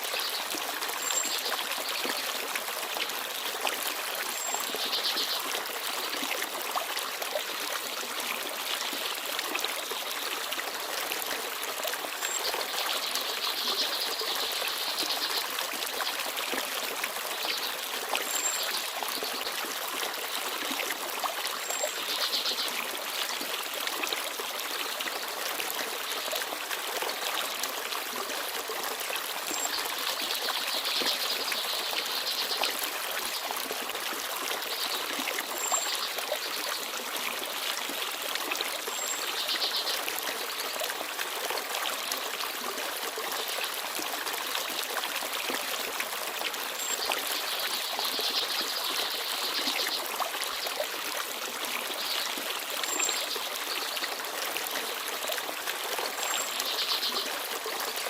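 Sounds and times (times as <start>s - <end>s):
stream babbling over stones: 0.0s - 58.0s.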